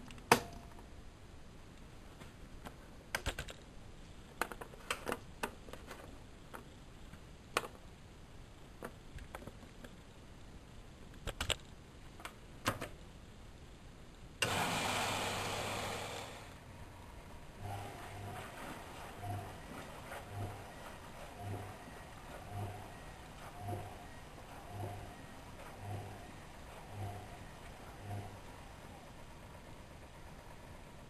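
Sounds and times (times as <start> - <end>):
low hum: 13.3 - 31.0.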